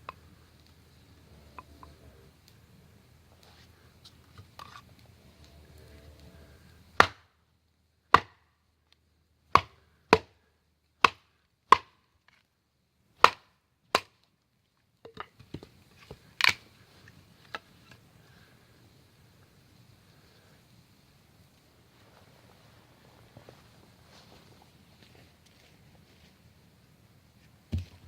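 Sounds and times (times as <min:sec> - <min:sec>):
wood being chopped: 0:07.0 - 0:07.3, 0:08.1 - 0:08.4, 0:09.5 - 0:10.4, 0:11.0 - 0:12.0, 0:13.2 - 0:14.2.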